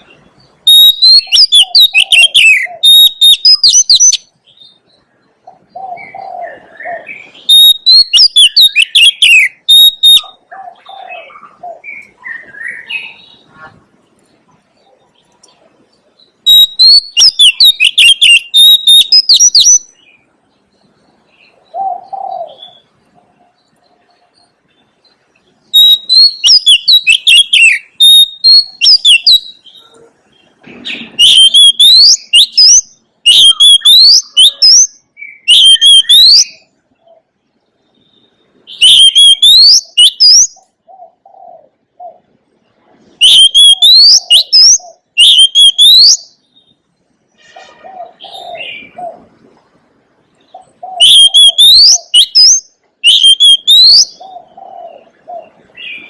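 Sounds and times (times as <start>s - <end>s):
bird singing whistled phrases: 0.6s - 4.8s, 5.8s - 10.4s, 11.2s - 13.5s, 16.4s - 20.1s, 25.7s - 29.9s, 31.0s - 36.6s, 38.0s - 40.6s, 43.2s - 46.5s, 50.9s - 54.2s.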